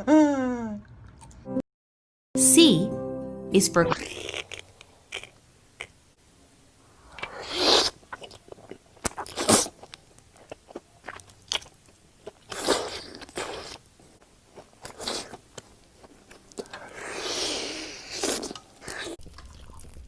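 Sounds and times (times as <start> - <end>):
mouth clicks: 4.0 - 6.0
crunchy bites and chewing: 4.1 - 5.9, 7.2 - 13.9.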